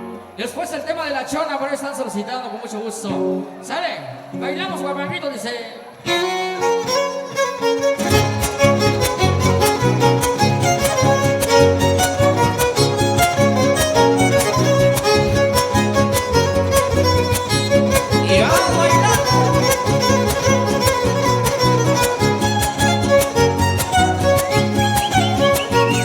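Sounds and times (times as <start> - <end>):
violin melody: 0.0 - 0.7, 6.0 - 26.0
fast guitar strumming: 6.1 - 26.0.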